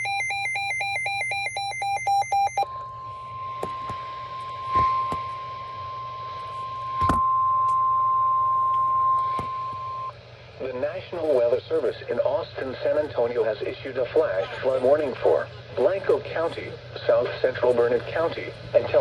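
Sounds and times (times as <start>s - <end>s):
steady warning tone: 0.0s - 10.3s.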